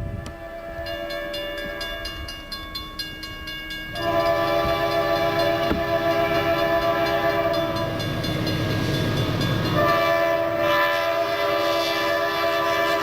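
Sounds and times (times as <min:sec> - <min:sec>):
locomotive air horn blast: 0:00.0 - 0:01.3, 0:04.0 - 0:08.0, 0:09.7 - 0:13.0
train rumble: 0:00.0 - 0:13.0.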